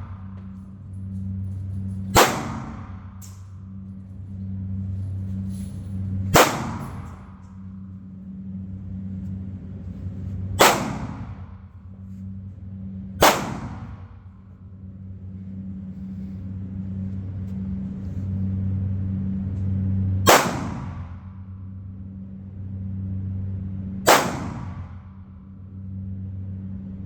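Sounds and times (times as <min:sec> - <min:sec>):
steady low hum: 0:00.0 - 0:27.0
gunshots: 0:02.1 - 0:03.2, 0:06.3 - 0:07.4, 0:10.6 - 0:11.6, 0:13.2 - 0:14.1, 0:20.3 - 0:21.2, 0:24.1 - 0:25.0.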